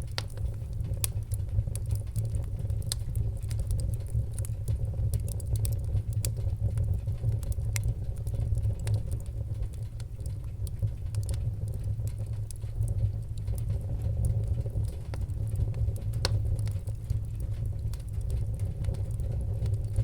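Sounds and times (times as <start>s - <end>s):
fire crackling and popping: 0.0s - 20.0s
low rumble of flames: 0.0s - 20.0s.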